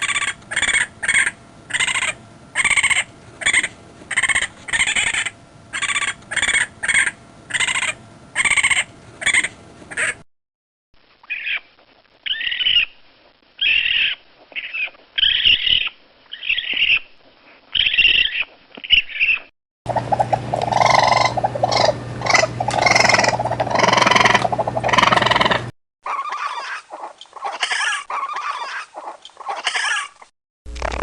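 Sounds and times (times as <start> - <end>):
raccoon high-pitched cries: 0.0 - 10.2, 11.3 - 13.0, 13.6 - 17.1, 17.8 - 30.3
raccoon screeching and chattering: 0.0 - 10.2, 11.3 - 13.0, 13.6 - 17.1, 17.7 - 30.2
steady low hum: 0.0 - 10.2, 19.9 - 25.7.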